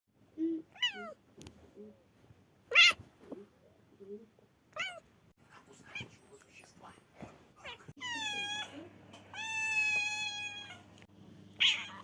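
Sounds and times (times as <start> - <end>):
kitten meowing: 9.3 - 10.8, 11.6 - 12.0.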